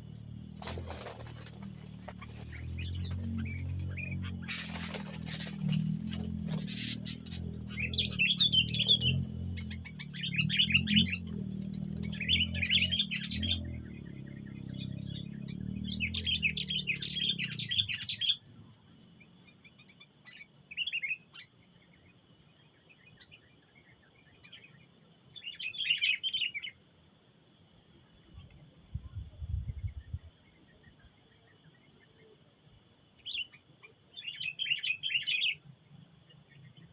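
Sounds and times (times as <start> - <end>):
small bird chattering: 2.1 - 11.4.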